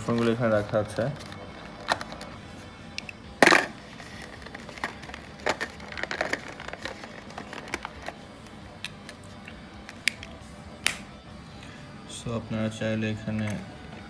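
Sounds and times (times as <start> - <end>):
plastic case clicks and knocks: 3.4 - 8.2.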